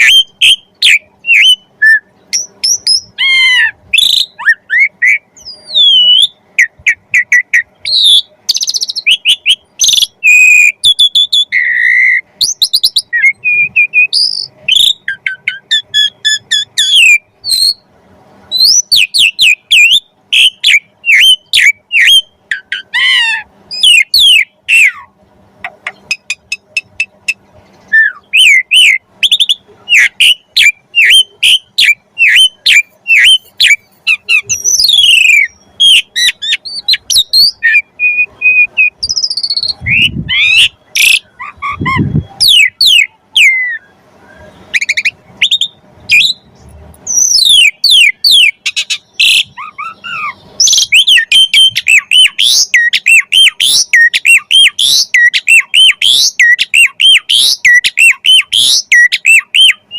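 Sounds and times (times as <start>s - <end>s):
rough low bird calls: 0.0s - 17.9s, 18.5s - 59.9s
starling whistling song: 0.0s - 59.9s.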